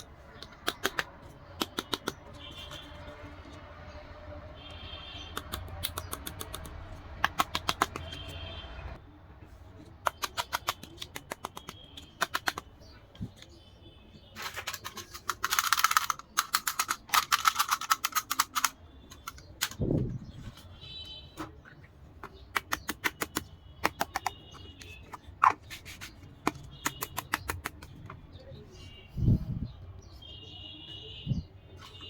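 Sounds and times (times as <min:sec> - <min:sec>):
plastic pieces clicking: 0:05.3 - 0:08.2, 0:10.0 - 0:12.7, 0:14.4 - 0:19.9, 0:22.2 - 0:25.6, 0:26.4 - 0:28.1.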